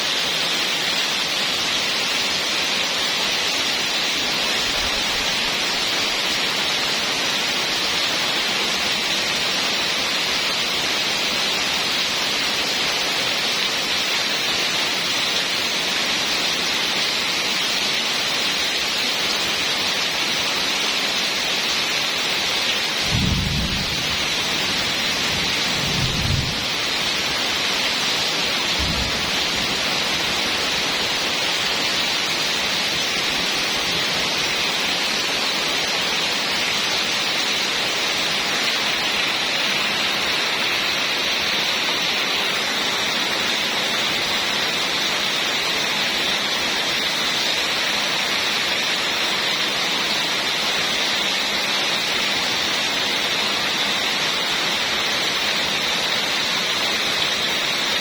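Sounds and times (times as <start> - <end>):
heavy rain falling: 0.0 - 58.0
low thunder rumbles: 23.0 - 26.8, 28.8 - 29.5.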